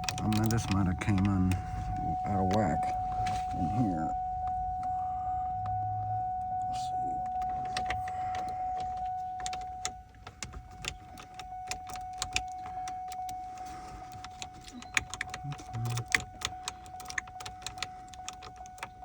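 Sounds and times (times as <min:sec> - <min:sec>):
key clicking in ignition lock: 0:00.0 - 0:03.3, 0:07.2 - 0:19.0
high electronic warning tone: 0:00.0 - 0:19.0.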